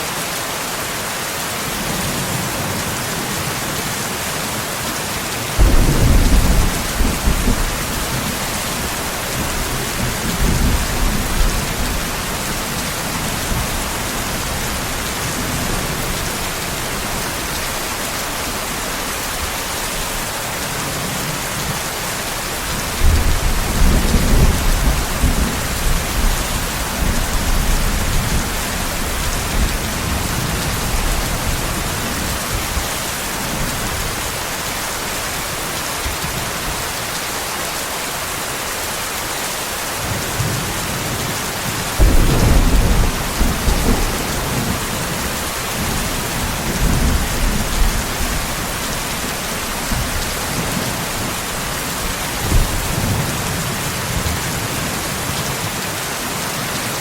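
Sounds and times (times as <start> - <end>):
heavy rain: 0.0 - 57.0
thunder rumbling: 5.6 - 18.6, 41.7 - 54.4.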